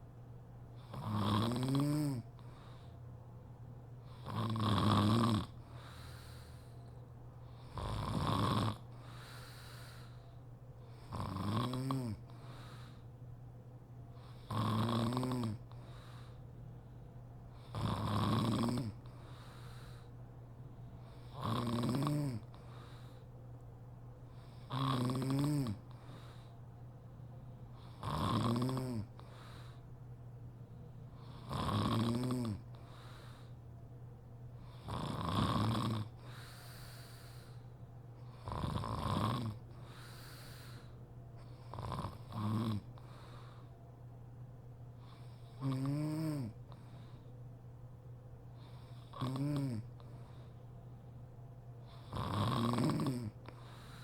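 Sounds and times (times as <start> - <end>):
woman snoring: 0.8 - 2.3, 4.1 - 5.6, 7.6 - 8.9, 11.1 - 12.3, 14.4 - 15.6, 17.6 - 19.1, 21.2 - 22.5, 24.5 - 25.9, 27.8 - 29.2, 31.2 - 32.8, 34.7 - 37.2, 38.3 - 40.5, 41.7 - 42.9, 45.5 - 46.6, 48.9 - 50.0, 51.9 - 53.4.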